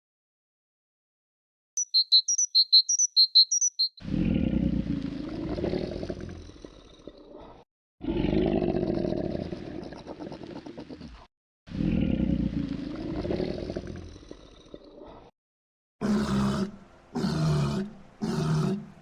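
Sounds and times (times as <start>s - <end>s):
lion roaring: 4.0s - 15.2s, 16.0s - 19.0s.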